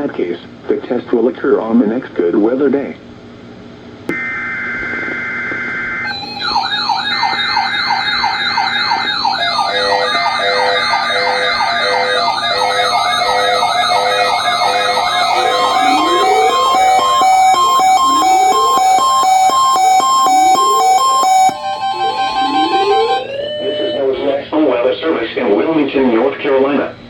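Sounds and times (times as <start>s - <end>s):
warbling siren alarms: 4.1s - 24.7s
steady data tones: 4.1s - 24.8s
steady beeping: 4.1s - 25.1s.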